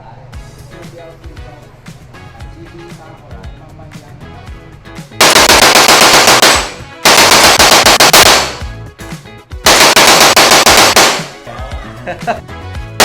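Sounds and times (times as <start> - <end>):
automatic gunfire bursts: 5.2 - 8.7, 9.7 - 11.4.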